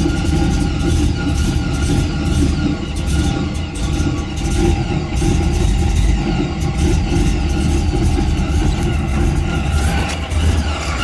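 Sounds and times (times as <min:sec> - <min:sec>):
engine idling roughly: 0:00.0 - 0:11.0.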